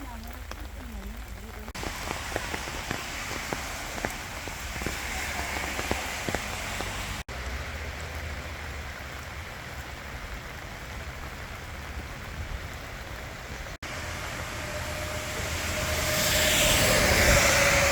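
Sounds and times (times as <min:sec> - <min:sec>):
rain falling on forest: 0:00.0 - 0:17.9
water drips: 0:00.0 - 0:17.9
rushing engine hum: 0:01.7 - 0:11.8, 0:13.4 - 0:17.9.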